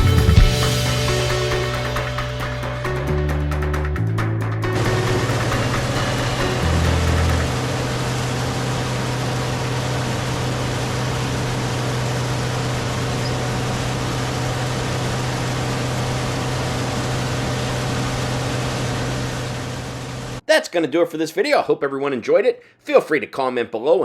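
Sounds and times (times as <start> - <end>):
diesel engine humming: 4.6 - 20.4.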